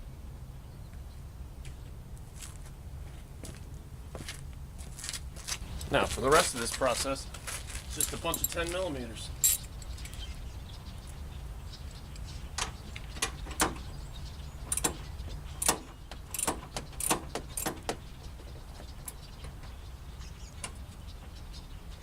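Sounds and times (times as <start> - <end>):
low steady rumble: 0.0 - 22.0
ratchet clicking: 15.6 - 17.8.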